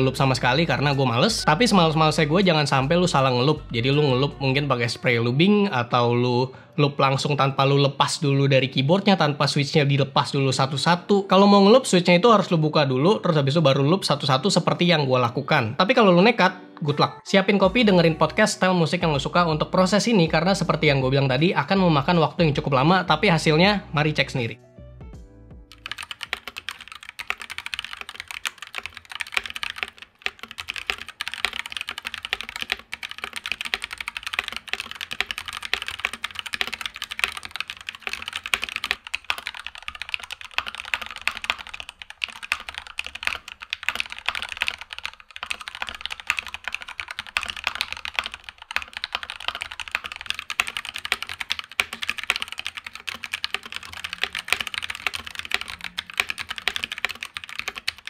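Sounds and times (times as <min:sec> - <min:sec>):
fast mechanical keyboard typing: 0:00.0 - 0:03.4, 0:25.7 - 0:58.0.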